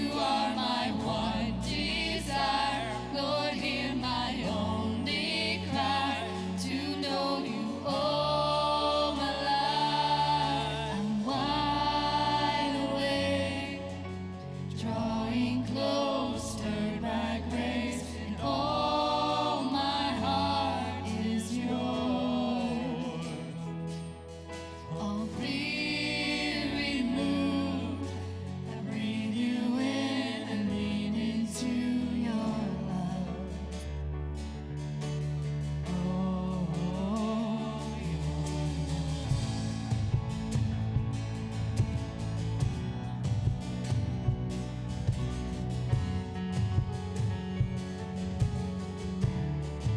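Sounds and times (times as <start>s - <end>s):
voices singing: 0.0s - 34.0s, 35.9s - 46.2s
instrumental accompaniment: 38.0s - 49.9s.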